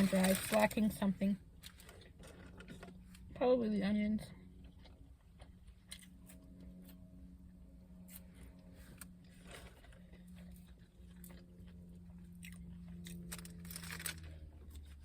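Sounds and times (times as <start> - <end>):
faint low hum: 0.0 - 15.0
person chewing and biting food: 4.6 - 7.0, 8.0 - 15.0.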